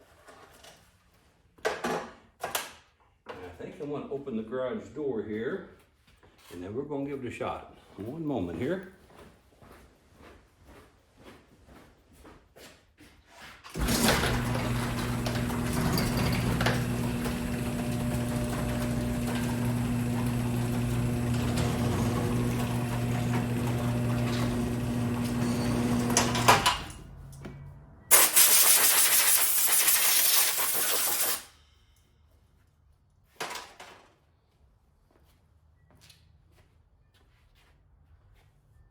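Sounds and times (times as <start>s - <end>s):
garage door opener humming: 13.7s - 27.5s
harsh loud sound: 28.1s - 31.5s.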